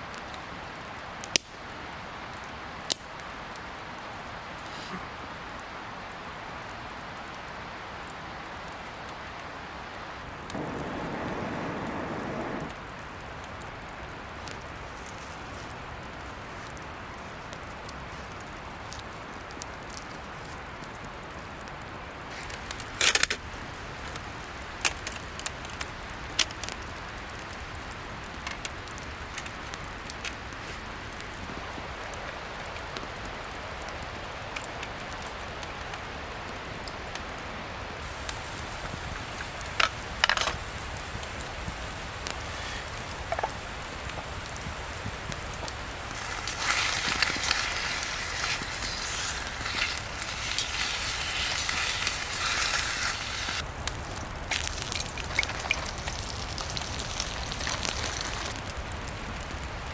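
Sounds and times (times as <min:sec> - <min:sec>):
fire popping and snapping: 0:00.0 - 0:59.9
wood fire crackling: 0:00.0 - 0:59.9
steady hiss: 0:10.0 - 0:18.9, 0:37.0 - 0:59.9.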